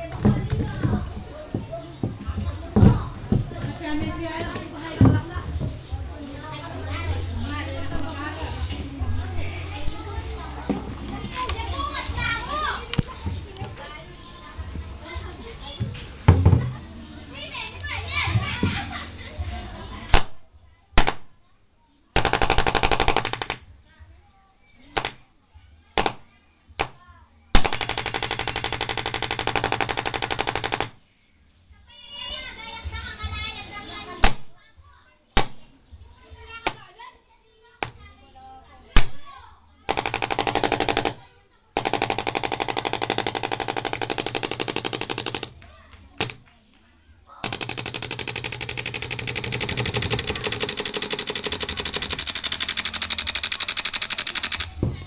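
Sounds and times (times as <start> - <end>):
airgun full-auto burst: 21.0 - 21.2, 22.2 - 23.6, 27.6 - 31.0, 39.9 - 41.2, 41.8 - 45.5, 47.4 - 54.7
airgun shots: 21.0 - 21.3, 27.6 - 30.9.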